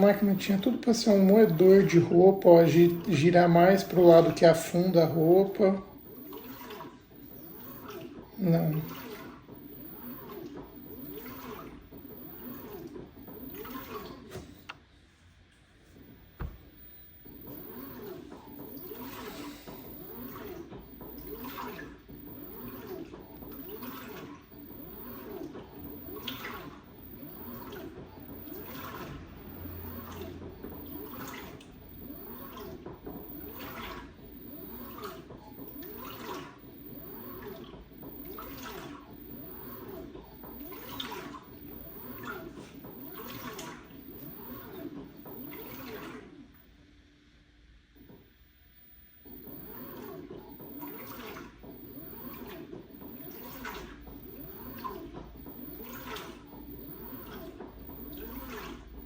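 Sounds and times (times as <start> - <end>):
washing machine water sloshing: 0.0 - 46.8, 48.0 - 59.0.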